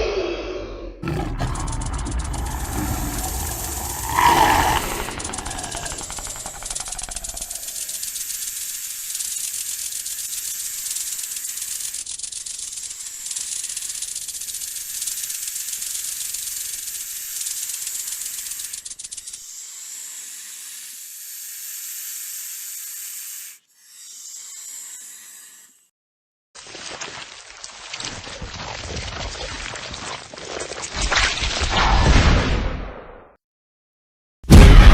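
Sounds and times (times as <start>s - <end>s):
snake-like hiss: 1.0s - 20.6s
high-pitched rattling buzz: 1.0s - 25.8s.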